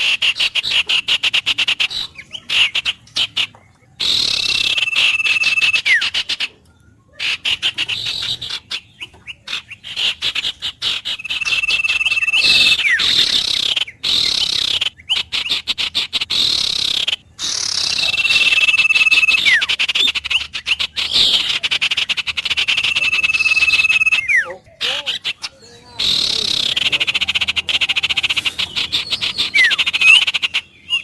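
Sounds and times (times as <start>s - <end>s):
birds chirping and clicking: 0.0s - 31.0s
bird whistled note: 22.6s - 24.5s.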